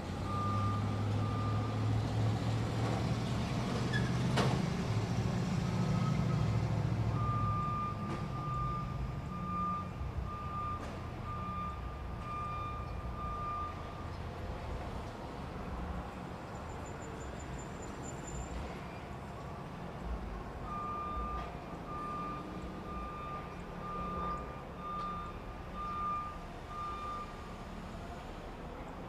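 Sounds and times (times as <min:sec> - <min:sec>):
truck engine rumbling: 0:00.0 - 0:29.0
reversing alarm beeping: 0:00.2 - 0:01.9, 0:07.1 - 0:14.2, 0:20.6 - 0:27.7.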